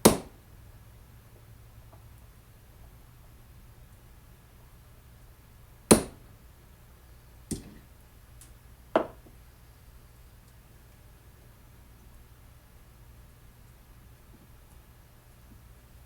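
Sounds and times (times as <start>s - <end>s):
sharp knocks: 5.9s - 6.2s.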